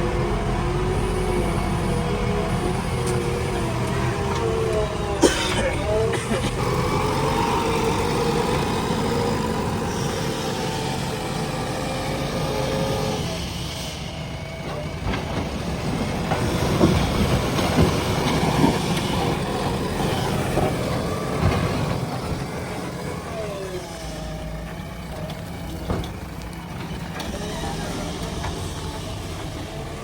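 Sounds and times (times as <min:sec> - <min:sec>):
diesel engine under load: 0:00.0 - 0:30.0
knocks and clanks: 0:24.7 - 0:29.8.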